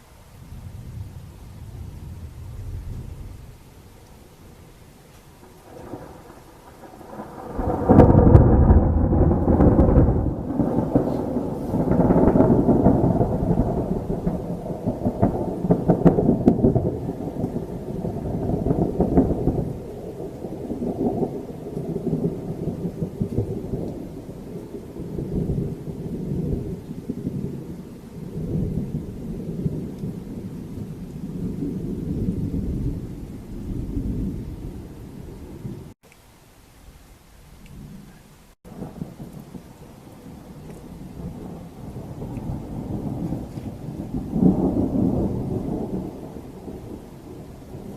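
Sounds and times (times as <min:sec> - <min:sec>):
thunder crash and rumble: 0:05.4 - 0:24.3, 0:28.3 - 0:36.0, 0:38.6 - 0:47.9.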